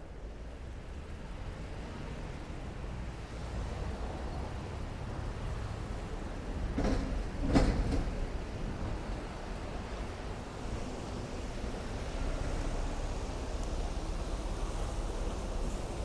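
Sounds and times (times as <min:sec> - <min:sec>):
clunks over rails: 0:06.6 - 0:08.5.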